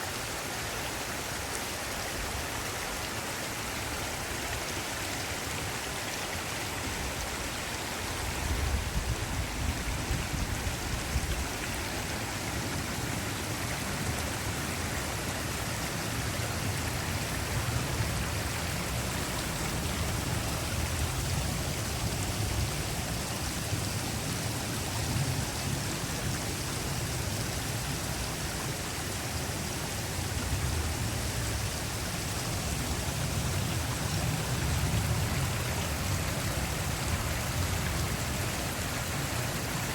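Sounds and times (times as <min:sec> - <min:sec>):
wind rumble on microphone: 0:06.8 - 0:28.6.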